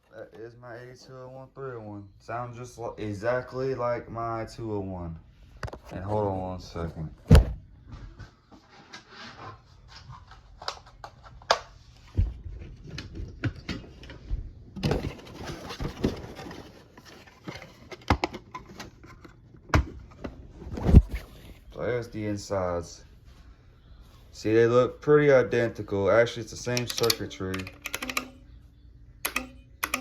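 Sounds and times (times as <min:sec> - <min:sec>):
plastic clicks and knocks: 0:29.3 - 0:30.0.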